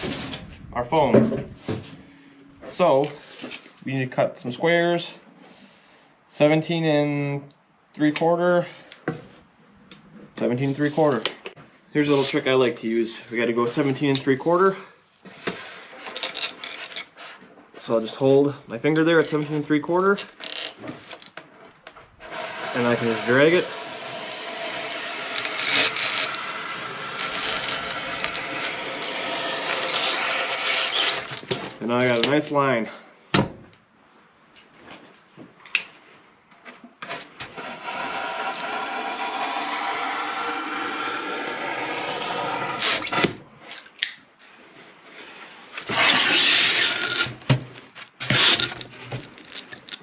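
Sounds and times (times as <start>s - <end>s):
foam board scraping strokes: 22.2s - 31.8s, 37.0s - 43.4s, 44.4s - 49.7s.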